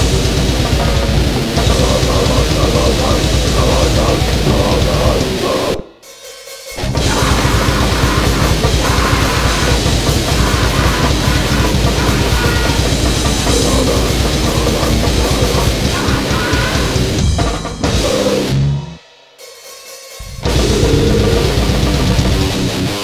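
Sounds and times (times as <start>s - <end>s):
distorted guitar and bass: 0.0s - 5.9s, 6.8s - 19.0s, 20.2s - 23.0s
fast drumming with cymbals: 0.0s - 18.6s, 19.3s - 22.7s.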